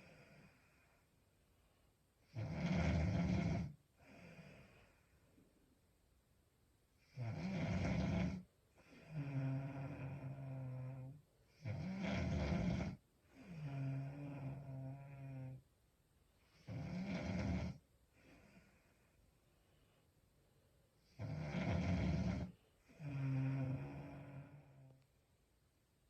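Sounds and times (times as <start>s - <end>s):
woman snoring: 0.0s - 1.0s, 2.2s - 5.0s, 7.0s - 15.6s, 16.4s - 19.0s, 21.0s - 25.0s
pitched breath: 4.0s - 5.4s, 18.1s - 20.1s.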